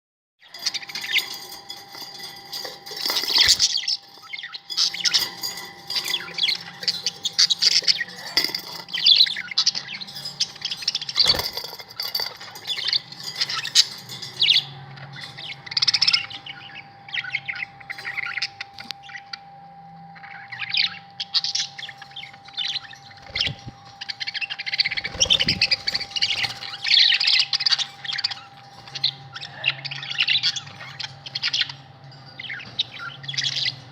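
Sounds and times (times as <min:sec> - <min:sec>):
budgerigars chattering: 0:20.2 - 0:33.9.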